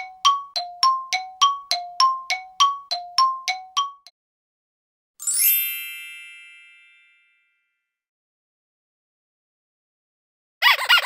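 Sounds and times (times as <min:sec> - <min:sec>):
shimmering metallic chime: 0:05.2 - 0:07.6.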